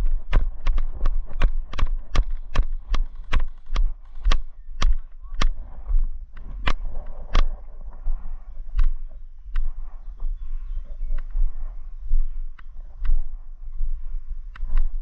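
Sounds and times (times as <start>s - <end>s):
sharp clicks with dull thumps: 0.0s - 10.3s, 12.5s - 13.3s, 14.5s - 15.0s.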